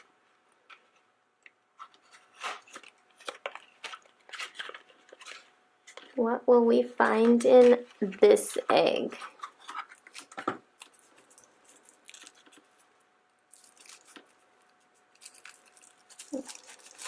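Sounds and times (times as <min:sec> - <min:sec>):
foil wrapper crinkling: 0:01.8 - 0:06.1, 0:09.2 - 0:17.0.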